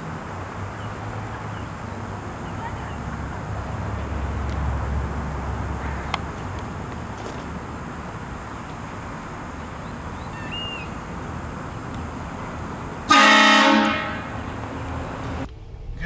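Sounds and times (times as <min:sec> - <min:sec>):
road and traffic noise: 0:00.0 - 0:16.0
air horn blast: 0:13.1 - 0:14.4.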